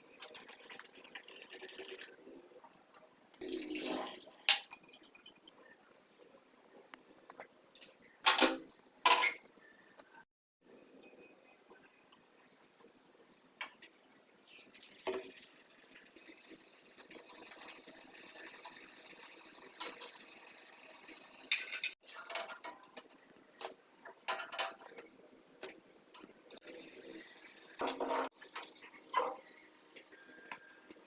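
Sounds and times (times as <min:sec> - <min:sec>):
food frying in hot oil: 0:14.5 - 0:22.0.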